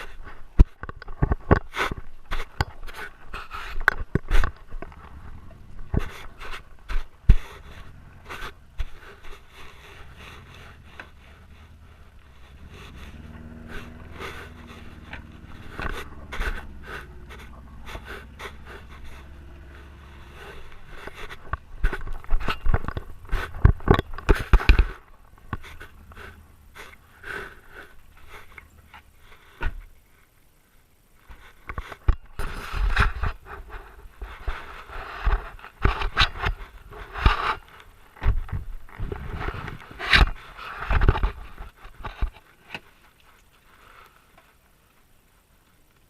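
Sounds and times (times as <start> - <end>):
dog panting: 7.3 - 21.6.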